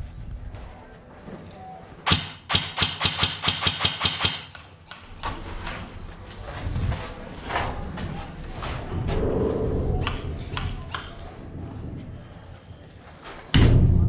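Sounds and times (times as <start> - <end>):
airsoft gun shots: 2.1 - 4.6.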